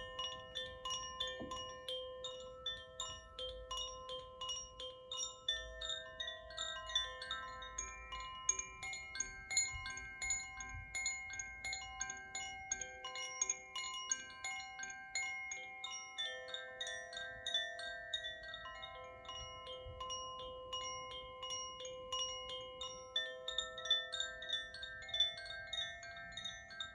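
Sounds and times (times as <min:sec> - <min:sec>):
metal chimes tinkling: 0:00.0 - 0:26.9.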